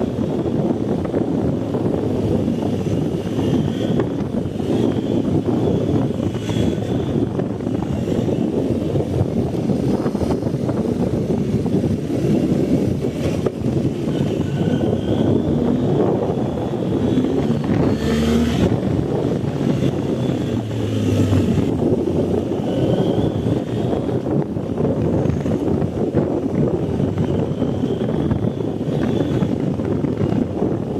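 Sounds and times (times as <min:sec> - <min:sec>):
motorcycle engine running: 0:00.0 - 0:30.9.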